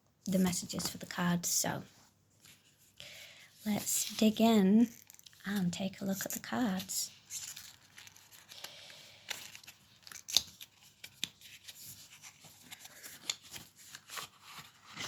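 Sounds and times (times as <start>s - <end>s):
cards rustling and scraping: 6.3s - 15.0s.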